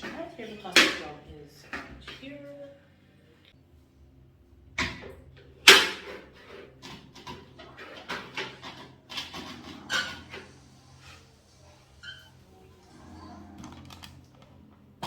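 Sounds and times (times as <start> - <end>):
objects knocking and clattering: 4.8 - 10.7.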